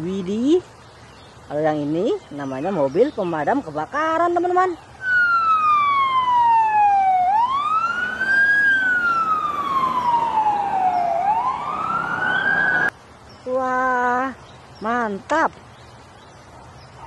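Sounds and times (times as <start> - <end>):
wailing fire engine siren: 5.0 - 12.9.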